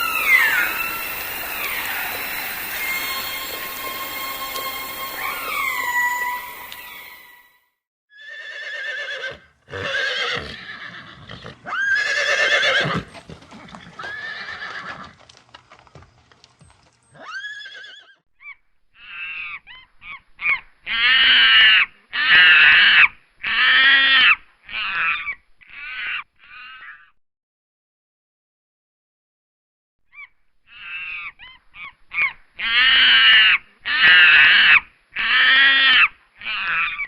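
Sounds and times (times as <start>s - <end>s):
horse neighing: 8.2s - 15.2s, 17.1s - 18.2s.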